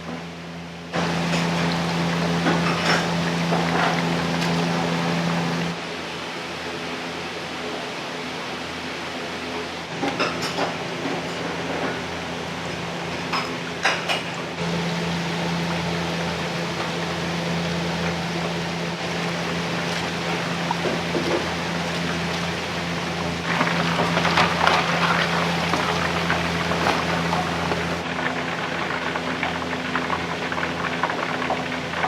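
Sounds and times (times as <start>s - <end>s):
steady hum: 14.5s - 32.0s.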